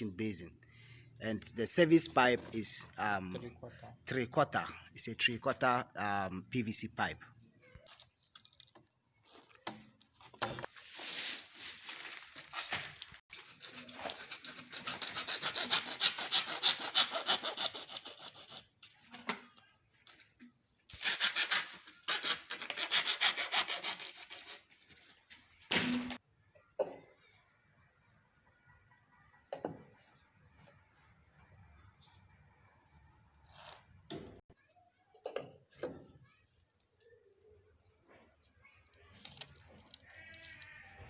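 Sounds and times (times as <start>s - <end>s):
hand saw cutting plastic pipe: 13.3s - 18.7s, 20.9s - 24.7s.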